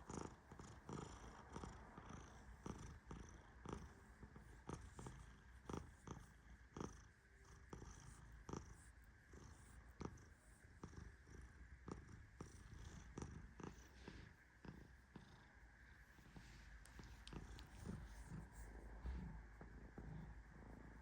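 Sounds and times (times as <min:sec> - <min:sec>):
cat purring: 0:00.0 - 0:21.0
faint irregular clicks: 0:16.8 - 0:18.7.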